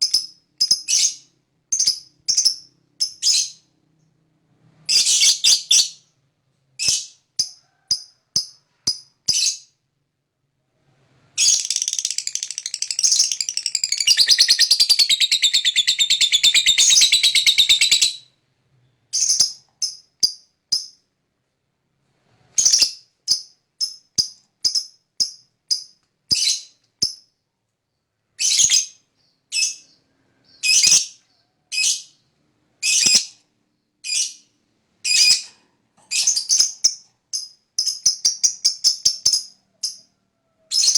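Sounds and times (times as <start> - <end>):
lovebird chirping and trilling: 0.0 - 3.7, 4.9 - 6.0, 6.8 - 8.5, 11.4 - 18.3, 19.1 - 20.9, 22.6 - 24.9, 28.4 - 32.2, 32.8 - 33.4, 34.0 - 35.5, 36.1 - 40.1.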